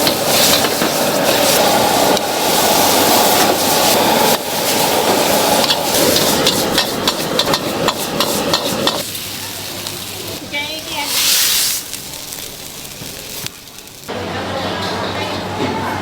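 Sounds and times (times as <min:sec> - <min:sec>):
metal spatula scraping wok: 0:00.0 - 0:01.6, 0:04.6 - 0:09.3
food sizzling in a wok: 0:00.0 - 0:14.2.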